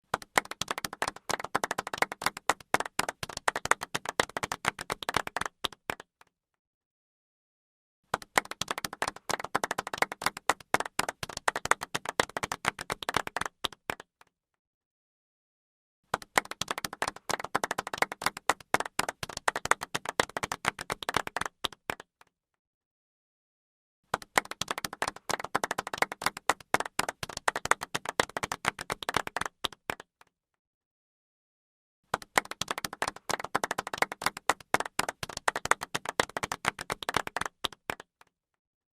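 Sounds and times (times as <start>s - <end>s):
crowd applauding politely: 0.1s - 6.0s, 8.1s - 14.0s, 16.1s - 22.0s, 24.1s - 30.1s, 32.1s - 38.1s.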